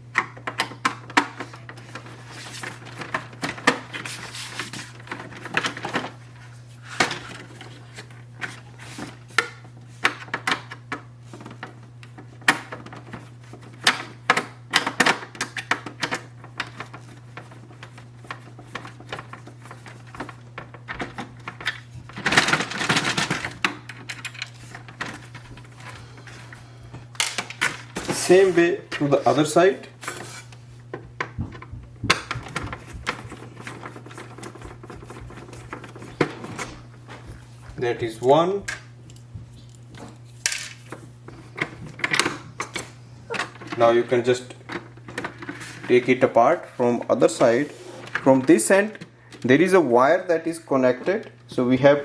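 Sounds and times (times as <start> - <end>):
low steady hum: 0.0 - 52.0
plastic parts clicking and knocking: 0.1 - 4.1, 7.0 - 26.0, 27.1 - 28.3, 30.9 - 46.1
scraping and rattling: 31.2 - 46.4.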